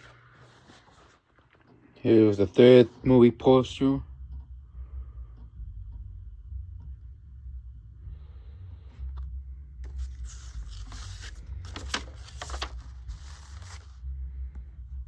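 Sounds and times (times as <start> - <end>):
paper rustling and crinkling: 0.0 - 1.7, 9.8 - 14.0
steady low hum: 0.0 - 15.0.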